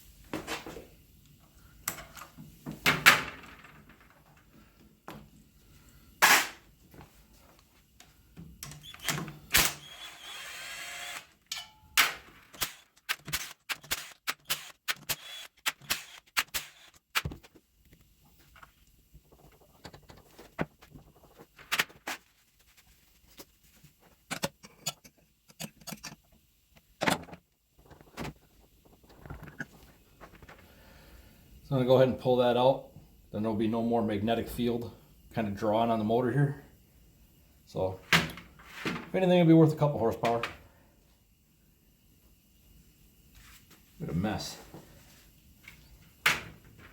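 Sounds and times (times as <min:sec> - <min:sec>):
tools and parts clicking and rattling: 0:01.8 - 0:04.5, 0:08.6 - 0:09.9, 0:11.4 - 0:17.6, 0:24.2 - 0:28.4.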